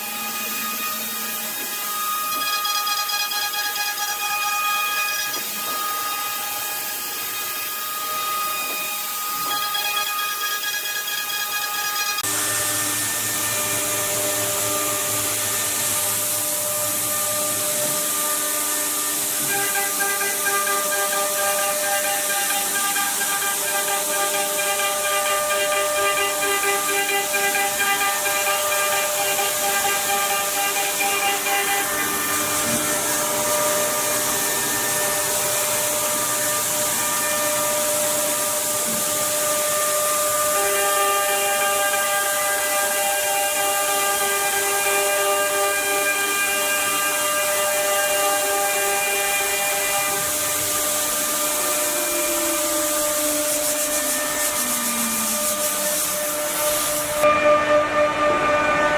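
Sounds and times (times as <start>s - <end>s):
router spindle whine: 0.0s - 58.9s
hissing rush of cutting: 12.2s - 57.3s.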